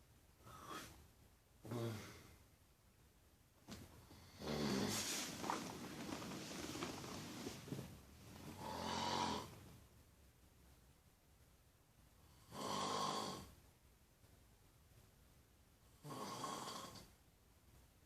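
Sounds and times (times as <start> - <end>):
quiet breathing: 0.4 - 2.6, 3.9 - 9.8
person snoring: 1.7 - 2.3, 4.1 - 5.5, 8.5 - 9.6, 12.4 - 13.5, 16.0 - 17.1.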